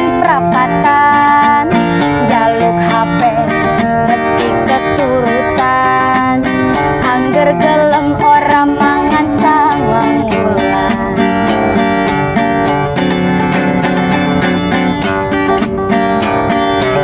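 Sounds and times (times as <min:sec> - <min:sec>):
woman singing pop song: 0:00.0 - 0:12.0
strummed acoustic guitar: 0:00.0 - 0:17.0.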